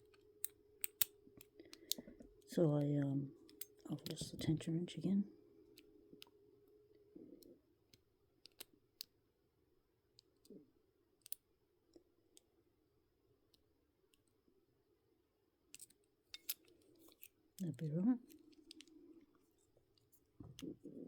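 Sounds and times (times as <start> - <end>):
small metallic lock pick clicks: 0.0 - 4.4, 7.4 - 9.2, 11.2 - 11.5, 15.7 - 19.0
low steady hum: 0.0 - 21.0.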